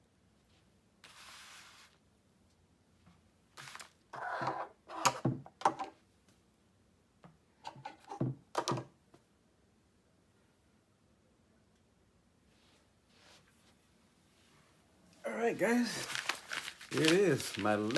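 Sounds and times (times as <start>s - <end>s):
brief hiss: 1.0s - 2.0s.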